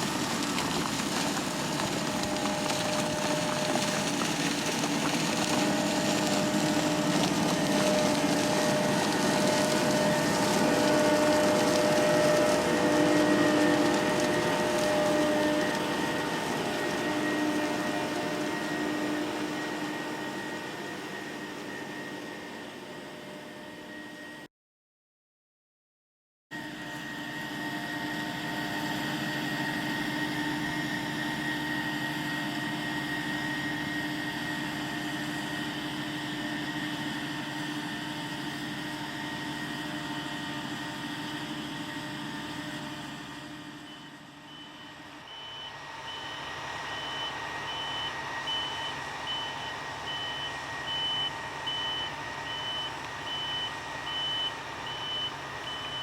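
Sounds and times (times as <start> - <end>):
harvesting machinery engine: 0.0 - 24.4, 26.6 - 56.0
whining tones: 0.0 - 24.5
reversing alarm beeping: 43.6 - 56.0.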